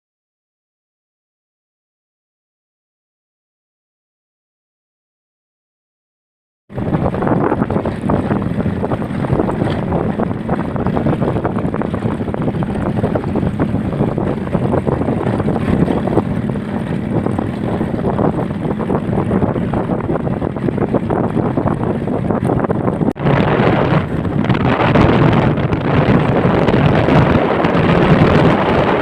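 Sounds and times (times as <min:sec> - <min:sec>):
wind buffeting microphone: 0:06.7 - 0:29.0.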